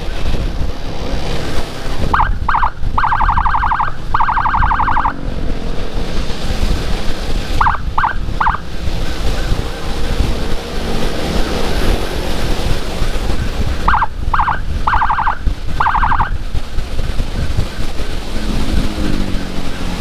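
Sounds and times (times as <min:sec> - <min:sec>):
wind rush on microphone: 0:00.0 - 0:20.0
siren chirps: 0:02.1 - 0:05.3, 0:07.6 - 0:08.7, 0:13.4 - 0:16.4.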